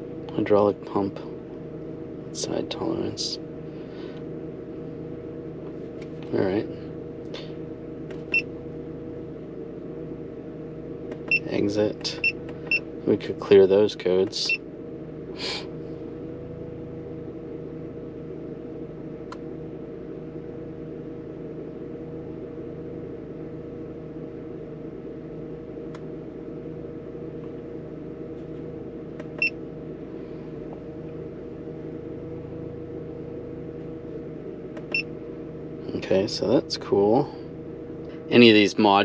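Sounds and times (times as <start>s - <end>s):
vehicle engine idling: 0.0s - 39.0s.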